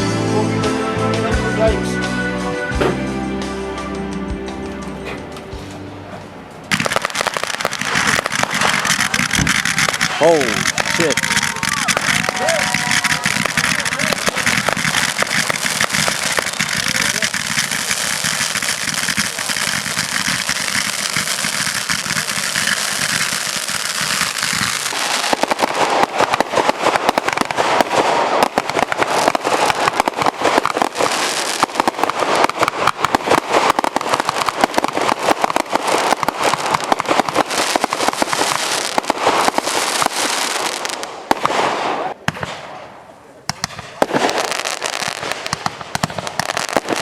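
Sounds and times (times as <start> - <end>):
fireworks hissing: 5.0 - 42.2
fireworks crackling pops: 6.5 - 47.0.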